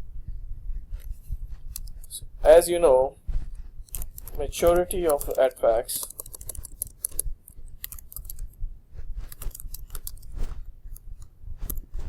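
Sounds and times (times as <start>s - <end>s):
low steady hum: 0.0s - 12.0s
light clicking and tapping: 3.9s - 8.6s.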